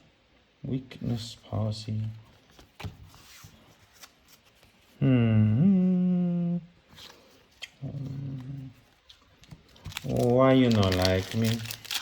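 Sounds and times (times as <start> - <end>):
man humming: 5.0 - 6.8.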